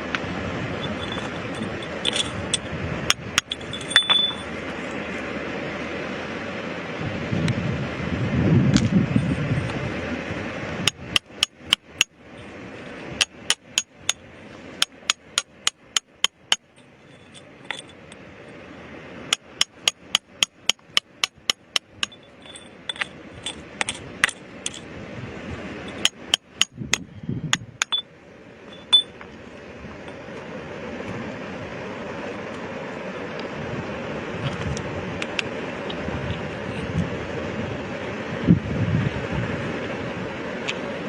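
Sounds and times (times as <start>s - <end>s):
metallic ring: 0.8s - 4.5s, 13.2s - 18.6s, 19.3s - 24.9s, 25.8s - 29.2s
hammer striking rock: 10.9s - 12.1s, 13.2s - 14.2s, 14.8s - 16.7s, 19.3s - 23.1s, 25.9s - 28.0s.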